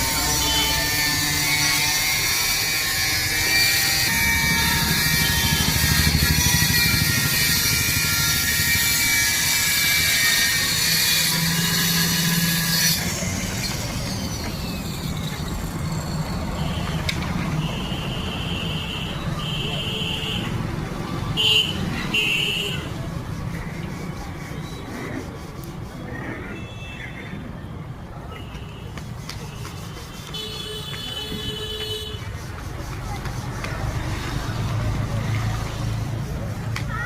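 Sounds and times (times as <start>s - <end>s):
power tool whining: 0.0s - 15.4s.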